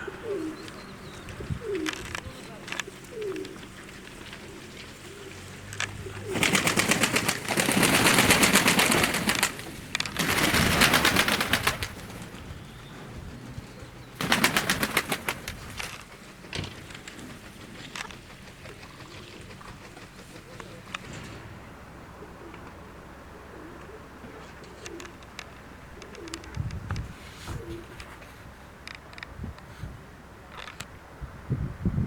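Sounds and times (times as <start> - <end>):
pigeon wings flapping: 1.6 - 21.4.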